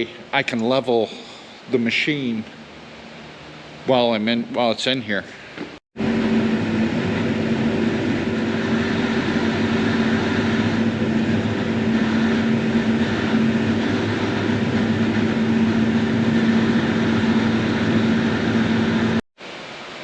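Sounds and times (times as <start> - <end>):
tractor diesel engine running: 6.0 - 19.2.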